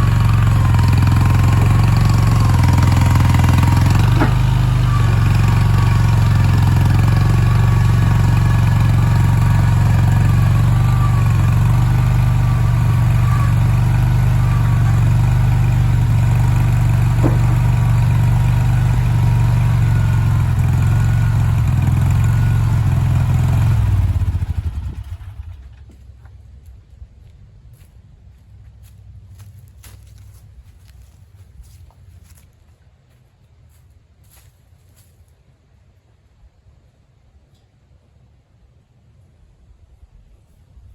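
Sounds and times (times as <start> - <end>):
engine running and winding down: 0.0 - 26.0.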